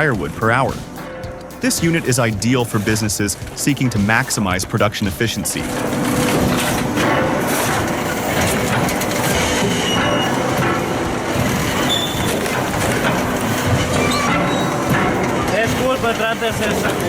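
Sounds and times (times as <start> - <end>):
machinery clattering: 0.0 - 17.0
high metallic squeals: 5.6 - 17.0.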